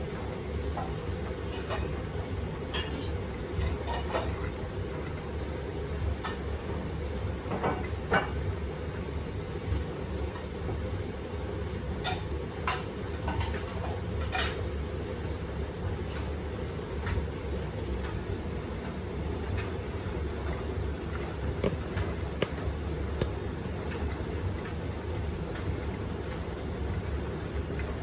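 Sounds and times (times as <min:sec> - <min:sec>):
washing machine motor hum: 0:00.0 - 0:28.0.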